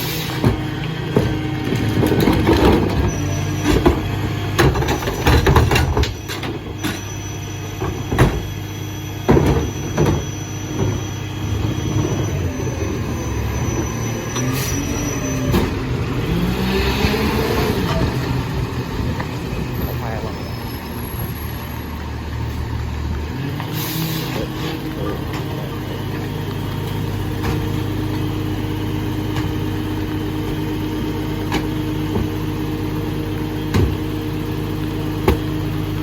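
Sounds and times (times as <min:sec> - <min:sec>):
garbage truck running: 0:00.0 - 0:36.0
rising whine: 0:06.7 - 0:29.2.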